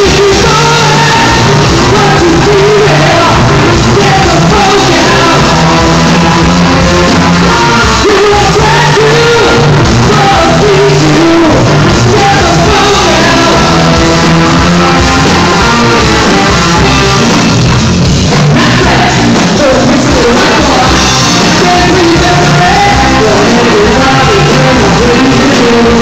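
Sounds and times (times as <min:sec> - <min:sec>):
person singing lead vocal: 0:00.0 - 0:17.5, 0:18.2 - 0:26.0
rock band playing: 0:00.0 - 0:26.0.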